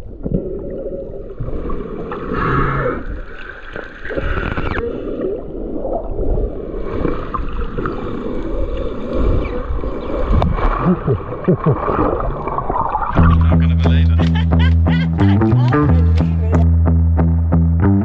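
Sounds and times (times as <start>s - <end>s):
water gurgling and sloshing: 0.0s - 13.3s
steady low rumble: 13.2s - 18.0s.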